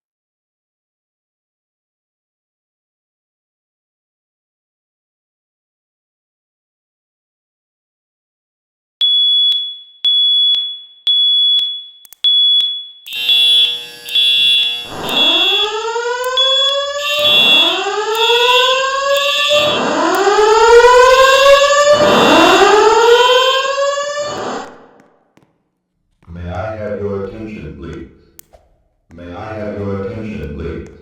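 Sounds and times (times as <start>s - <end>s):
pulsing high electronic alarm tone: 9.0s - 24.8s
rising whoop alert tone: 15.1s - 24.7s.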